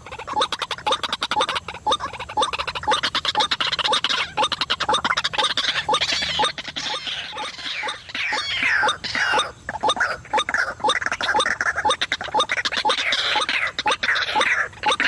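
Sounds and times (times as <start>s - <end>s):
falling bird calls: 0.0s - 15.0s
waterhen clicking calls: 0.0s - 15.0s.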